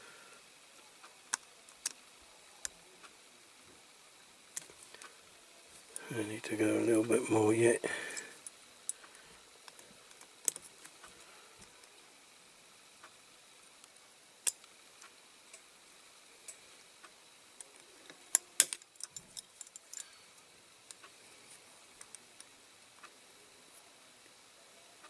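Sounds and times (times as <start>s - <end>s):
small clicks of toy car parts: 1.3s - 2.0s, 8.2s - 12.0s, 17.6s - 21.2s, 22.0s - 23.1s.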